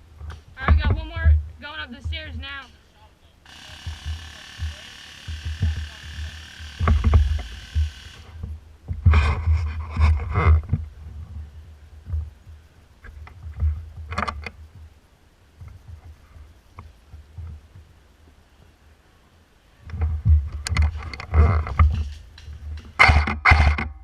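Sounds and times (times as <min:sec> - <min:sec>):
airsoft gun firing full-auto: 0:03.5 - 0:08.3.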